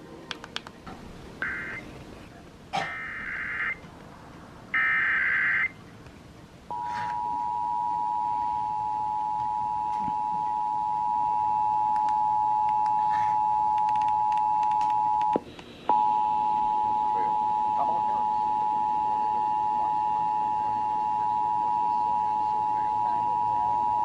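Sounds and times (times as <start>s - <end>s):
two-tone attention signal: 6.7s - 24.0s.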